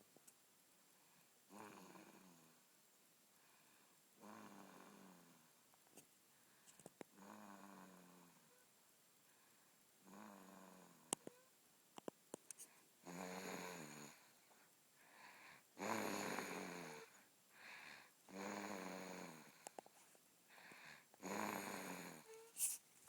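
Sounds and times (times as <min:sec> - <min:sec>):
loud snoring: 0:01.5 - 0:02.6, 0:04.2 - 0:05.5, 0:07.2 - 0:08.4, 0:10.1 - 0:11.1, 0:13.1 - 0:14.3, 0:15.8 - 0:17.2, 0:18.3 - 0:19.7, 0:21.2 - 0:22.5
soft breath: 0:03.4 - 0:04.0, 0:14.4 - 0:15.7, 0:17.0 - 0:18.2, 0:19.7 - 0:21.2.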